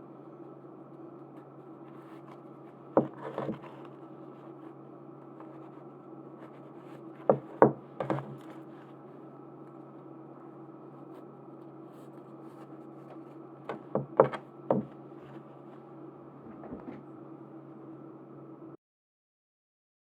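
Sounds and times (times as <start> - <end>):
steady low hum: 0.0 - 18.8
objects tapping and clicking on table: 7.2 - 8.4, 13.7 - 15.0.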